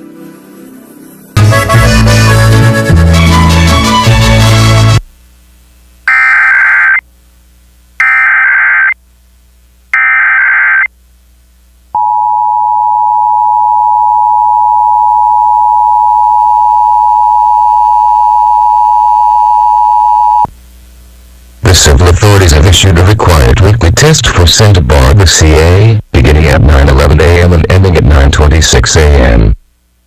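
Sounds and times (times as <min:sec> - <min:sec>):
music: 0:00.0 - 0:05.1
data tone bursts: 0:06.1 - 0:07.0, 0:08.0 - 0:09.0, 0:10.0 - 0:10.9
two-tone attention signal: 0:06.1 - 0:07.0, 0:08.0 - 0:09.0.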